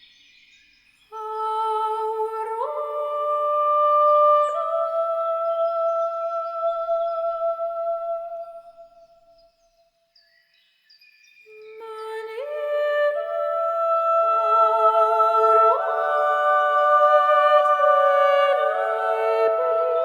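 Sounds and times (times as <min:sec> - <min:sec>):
wordless choral singing: 0:12.3 - 0:20.0.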